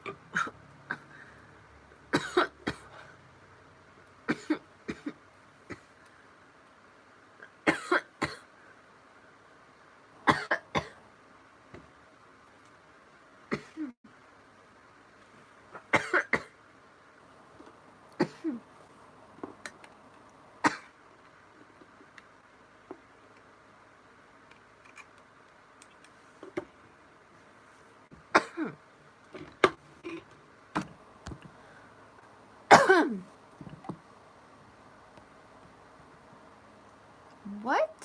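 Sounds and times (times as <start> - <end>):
woman coughing and clearing throat: 2.2 - 2.9, 4.3 - 5.9, 7.7 - 8.4, 10.3 - 11.0, 16.0 - 16.5, 28.4 - 28.8, 32.7 - 33.3.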